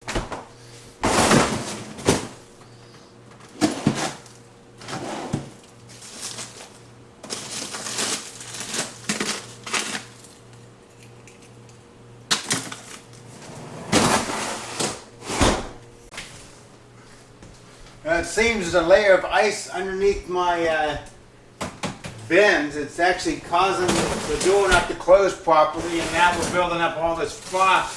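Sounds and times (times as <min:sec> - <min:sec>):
freezer drawer knocks and clatters: 0:00.0 - 0:02.5, 0:03.5 - 0:05.6, 0:13.9 - 0:15.8, 0:23.4 - 0:25.1, 0:25.8 - 0:26.9
steady low hum: 0:00.1 - 0:27.9.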